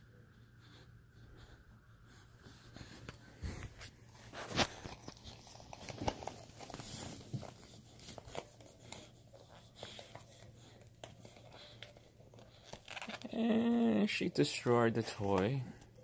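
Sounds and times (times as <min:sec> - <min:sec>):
dog chewing and tearing toy: 0:04.1 - 0:13.5.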